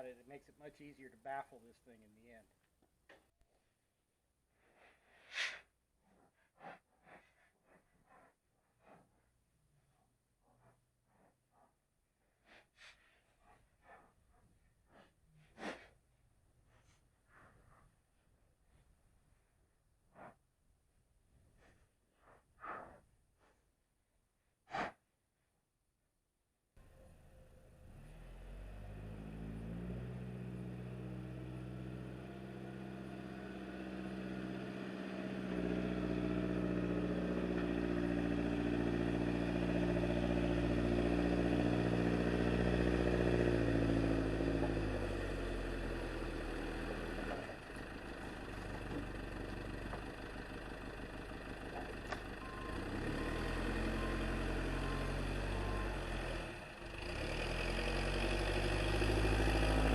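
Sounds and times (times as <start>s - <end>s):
sawmill engine running: 27.8s - 59.9s.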